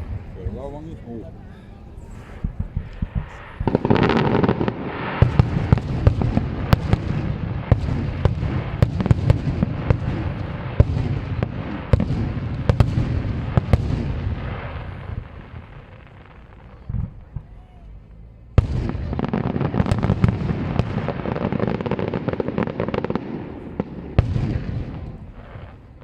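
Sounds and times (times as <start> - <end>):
fireworks bursting and crackling: 0.0 - 26.0
sharp firework bangs: 2.0 - 17.8, 18.6 - 26.0.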